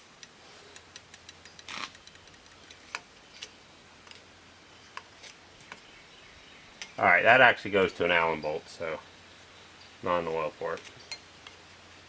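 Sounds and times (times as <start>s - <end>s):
metal clicks and taps: 0.2s - 4.2s.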